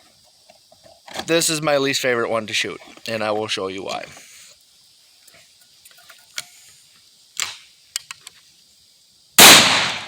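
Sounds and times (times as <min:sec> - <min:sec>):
loud shotgun blast: 0:09.4 - 0:10.0.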